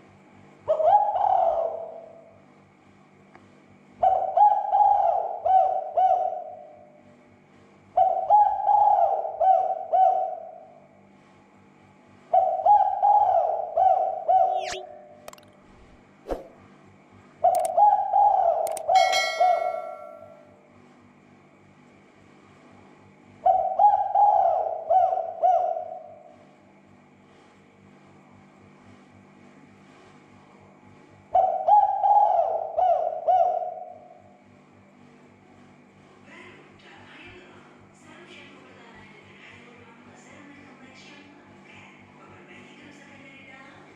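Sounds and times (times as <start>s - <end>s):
dove cooing: 0.7s - 1.9s, 4.0s - 6.6s, 8.0s - 10.4s, 12.4s - 15.4s, 23.5s - 26.1s, 31.4s - 34.0s.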